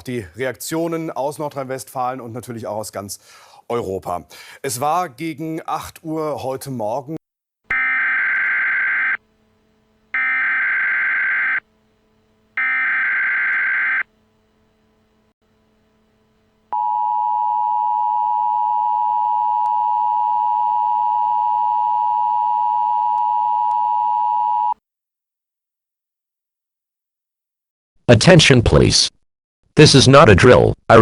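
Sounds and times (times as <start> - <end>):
harsh data bursts: 7.7 - 9.2, 10.2 - 11.6, 12.6 - 14.1.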